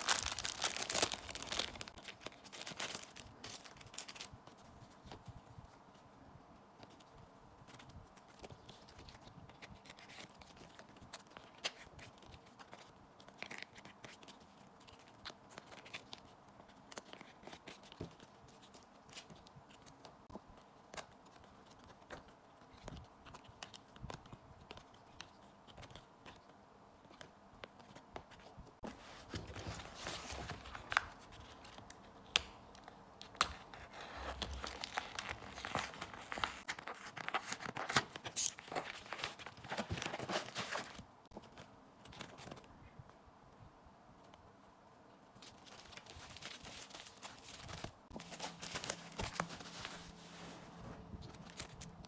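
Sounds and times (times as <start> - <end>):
packaging tearing and crinkling: 0.0 - 4.3, 34.2 - 41.0
packaging clicks and rustles: 0.0 - 4.4, 28.9 - 42.7, 45.4 - 50.3.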